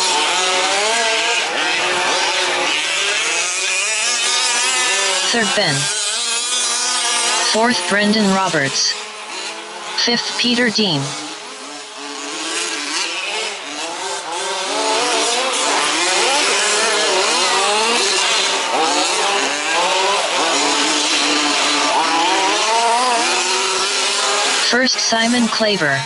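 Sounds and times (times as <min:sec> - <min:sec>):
rc truck engines revving: 0:00.0 - 0:26.0.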